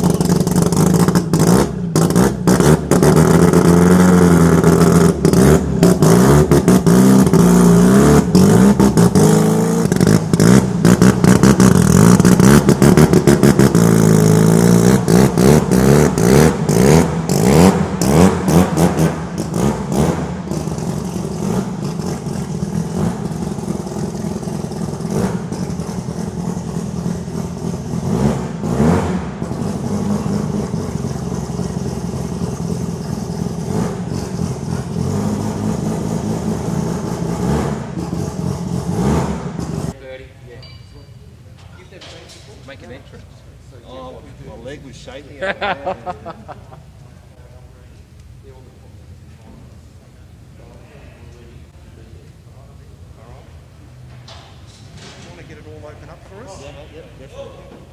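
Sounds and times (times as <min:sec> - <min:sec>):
rotary engine revving: 0:00.0 - 0:40.0
exhaust cracks: 0:00.0 - 0:40.1, 0:51.7 - 0:57.9.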